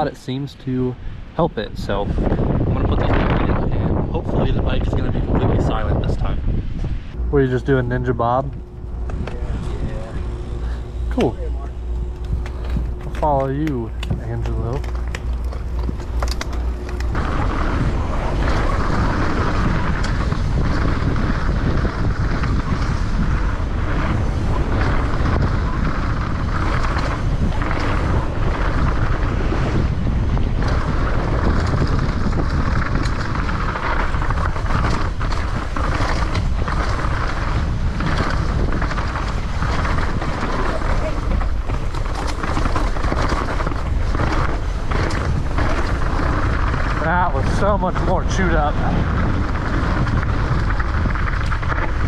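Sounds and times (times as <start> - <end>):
wind rushing over microphone: 0.0 - 52.0
tyres rumbling over dirt: 1.6 - 52.0
bike knocking over bumps: 12.3 - 52.0.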